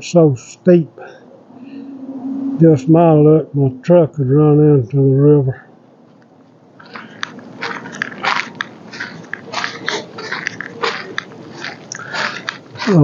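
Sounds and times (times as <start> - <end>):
footsteps crunching on leaves: 6.8 - 13.0.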